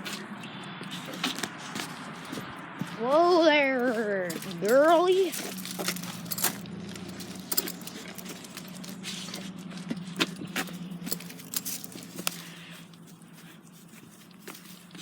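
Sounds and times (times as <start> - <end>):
dog collar tags jingling: 3.4 - 15.0.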